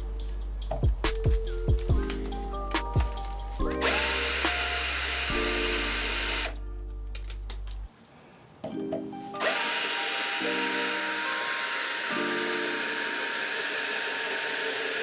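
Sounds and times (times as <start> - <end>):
power drill running: 3.8 - 6.6, 9.4 - 15.0.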